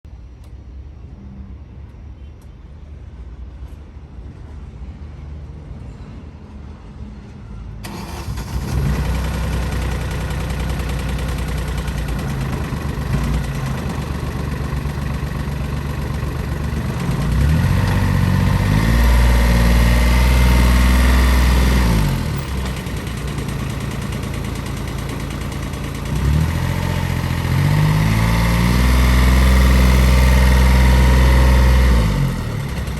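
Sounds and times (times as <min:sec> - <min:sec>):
engine starting and revving: 0:07.8 - 0:32.9.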